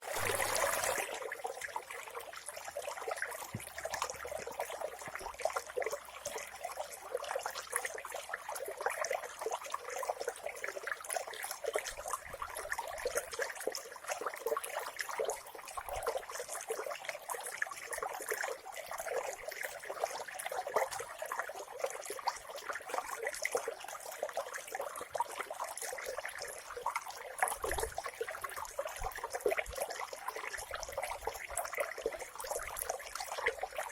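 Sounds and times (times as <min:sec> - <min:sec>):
stream babbling over stones: 0:00.0 - 0:33.9.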